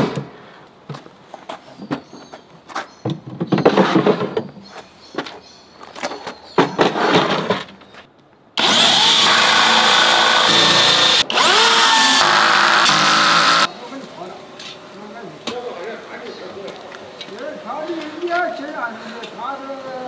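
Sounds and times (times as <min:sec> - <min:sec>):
power drill running: 0:08.6 - 0:13.7.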